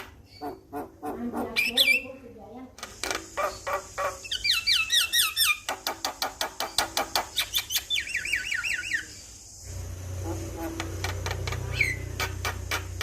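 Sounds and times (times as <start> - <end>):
bird harsh clicks: 5.3 - 7.9.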